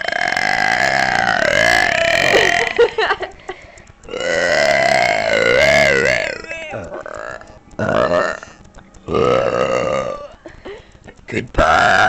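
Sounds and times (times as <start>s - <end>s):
girl burping: 0.0s - 2.9s, 9.1s - 10.4s.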